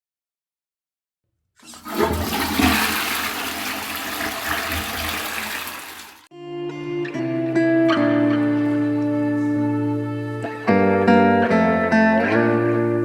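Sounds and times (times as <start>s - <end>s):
toilet flushing: 1.6s - 6.3s
guitar music: 6.3s - 13.0s.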